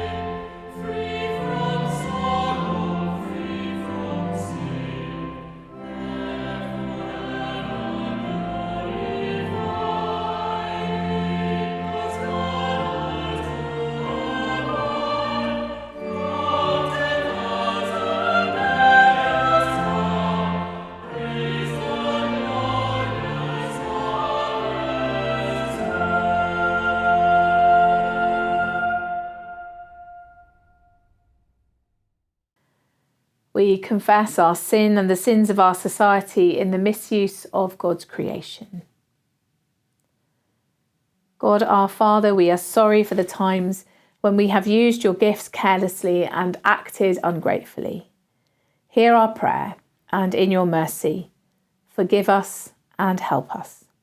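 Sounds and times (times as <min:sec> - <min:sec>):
choir breaths: 0:00.0 - 0:29.9
choir singing church music: 0:00.0 - 0:30.5.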